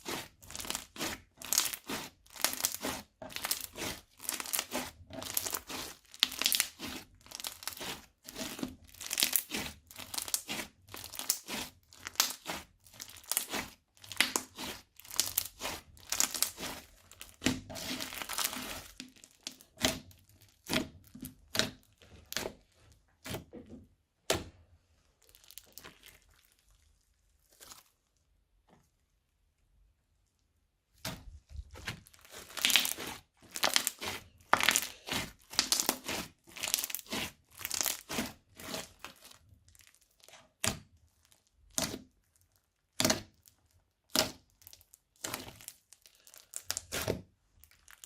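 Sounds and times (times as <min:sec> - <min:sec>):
crunchy slime popping: 0:00.0 - 0:22.6, 0:25.2 - 0:28.0, 0:31.0 - 0:48.0.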